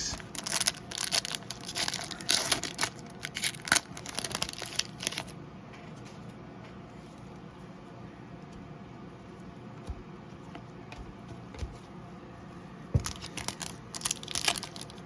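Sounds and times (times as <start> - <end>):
foil wrapper tearing and crinkling: 0.1 - 5.3, 13.1 - 15.0.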